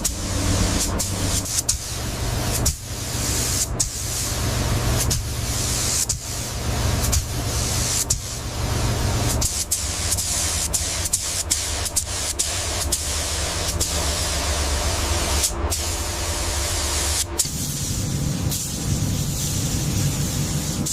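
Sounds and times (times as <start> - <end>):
low steady hum: 0.0 - 11.4
loud spraying hiss: 0.0 - 20.9.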